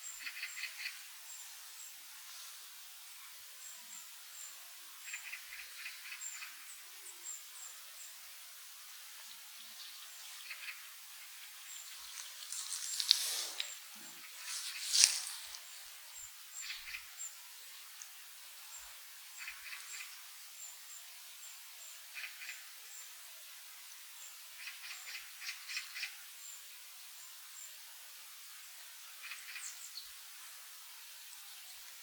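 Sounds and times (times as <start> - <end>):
birds chirping: 9.2 - 17.1.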